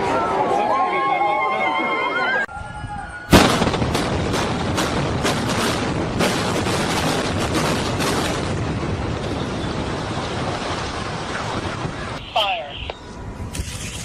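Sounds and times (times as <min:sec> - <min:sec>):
building collapse roar: 0:03.2 - 0:12.2
sharp cracks: 0:03.3 - 0:08.6.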